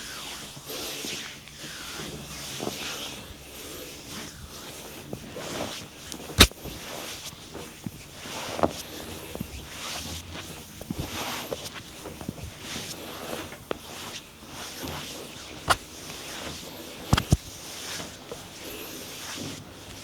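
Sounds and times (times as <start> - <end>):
sharp snap: 17.1 - 17.4.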